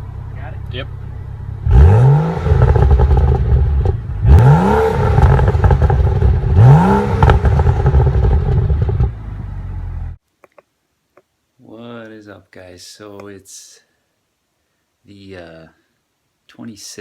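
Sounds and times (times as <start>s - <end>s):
engine idle rumble: 0.0s - 1.7s, 7.2s - 10.2s
car engine revving: 0.6s - 10.2s.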